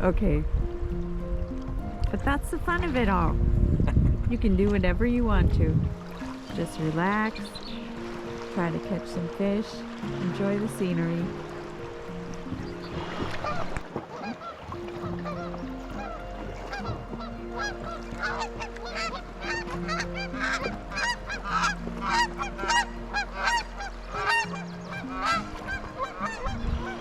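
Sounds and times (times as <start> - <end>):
soft background music: 0.0 - 27.0
geese honking: 6.6 - 27.0.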